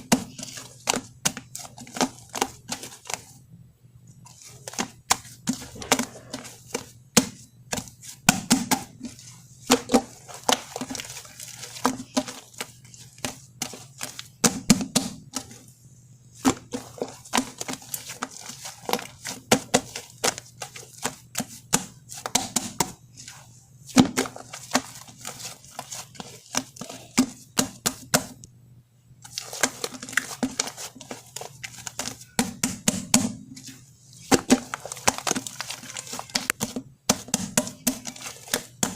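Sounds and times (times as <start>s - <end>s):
slime squishing with sticky pops: 34.2s - 38.9s.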